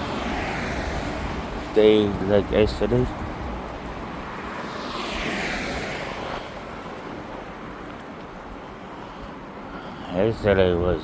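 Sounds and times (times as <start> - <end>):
vehicle passing by: 0.0 - 7.0.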